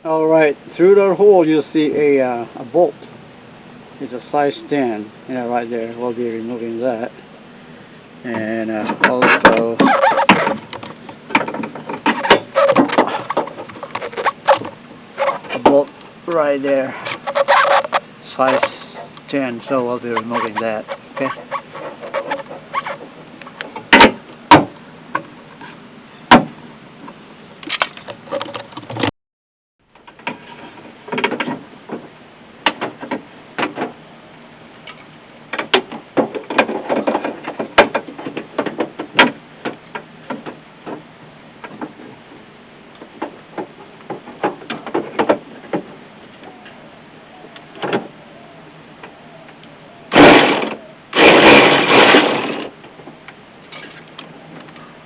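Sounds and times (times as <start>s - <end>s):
power driver motor bursts: 50.1s - 52.7s.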